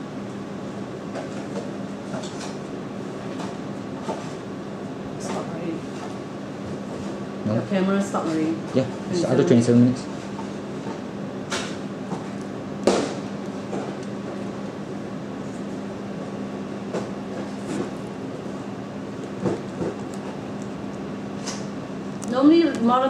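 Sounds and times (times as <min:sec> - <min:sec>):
indoor room hum: 0:00.0 - 0:23.0.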